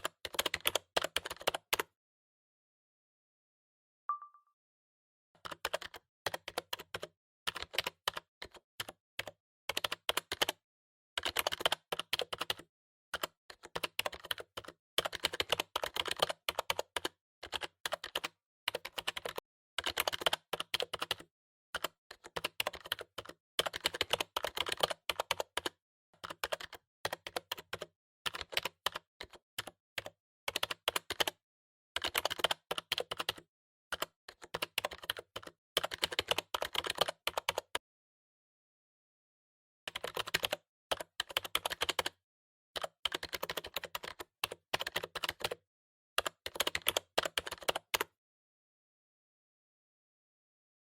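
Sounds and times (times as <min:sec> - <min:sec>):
keyboard typing: 0:00.0 - 0:01.9, 0:05.4 - 0:10.6, 0:11.2 - 0:31.4, 0:32.0 - 0:37.8, 0:39.9 - 0:42.2, 0:42.8 - 0:45.6, 0:46.2 - 0:48.2.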